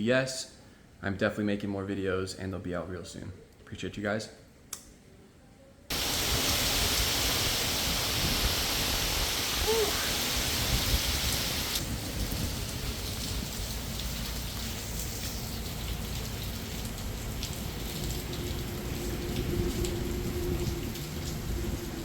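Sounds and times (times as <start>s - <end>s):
heavy rain hissing: 5.9s - 22.0s
raindrops ticking on surface: 9.6s - 22.0s.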